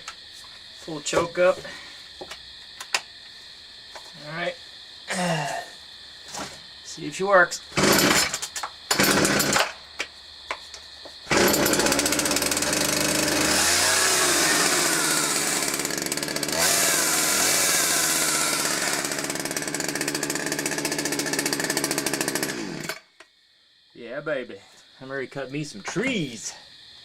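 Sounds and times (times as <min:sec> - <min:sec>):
chainsaw starting and revving: 0:07.7 - 0:09.7, 0:11.3 - 0:23.1.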